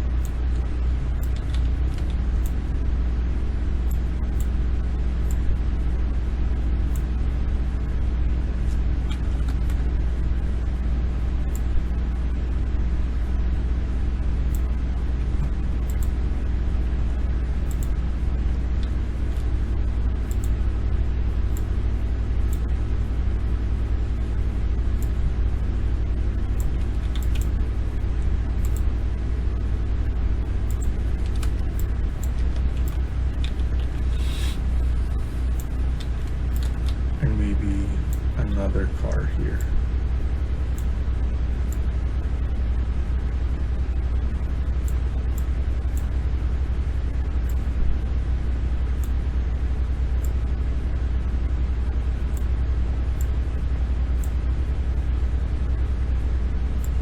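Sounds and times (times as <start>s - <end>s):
low hum and rumble: 0.0s - 57.0s.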